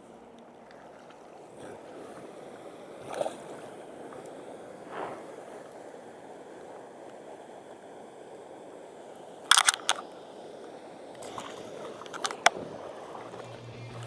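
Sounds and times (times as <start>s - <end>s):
steady background hiss: 0.0s - 14.0s
sharp clicks: 9.5s - 10.1s, 11.2s - 12.6s.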